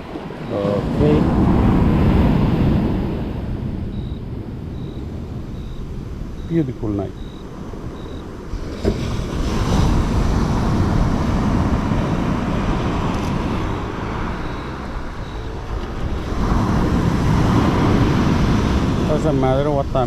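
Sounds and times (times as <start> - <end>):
surf rushing: 0.0 - 20.0
wind buffeting microphone: 0.0 - 20.0.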